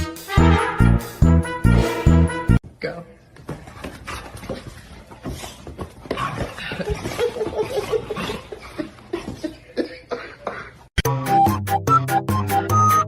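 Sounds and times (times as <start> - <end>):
person laughing: 6.6 - 10.9.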